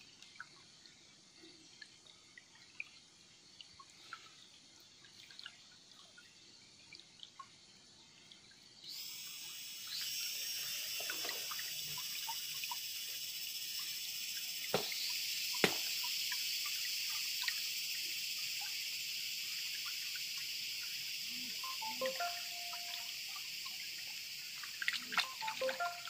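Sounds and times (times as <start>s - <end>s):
insects chirring: 8.5s - 26.0s.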